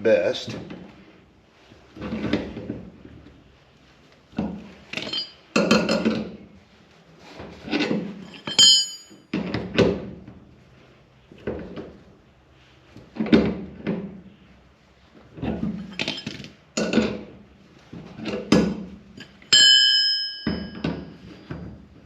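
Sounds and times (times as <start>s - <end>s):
metal tools knocking and clanking: 4.4s - 6.3s, 7.7s - 9.6s, 15.5s - 17.3s, 18.2s - 21.8s
metallic ring: 4.9s - 5.9s, 8.2s - 9.3s, 15.8s - 16.4s, 19.2s - 21.6s.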